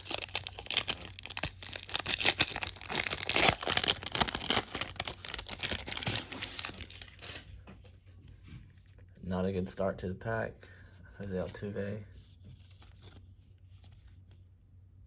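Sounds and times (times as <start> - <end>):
plastic wrapper tearing and crumpling: 0.0 - 7.5.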